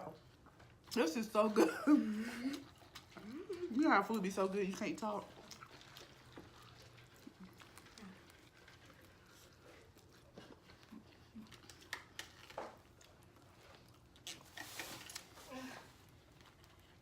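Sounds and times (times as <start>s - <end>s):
chewing corn on the cob: 0.0s - 17.0s
small clicks and crunches: 11.4s - 17.0s.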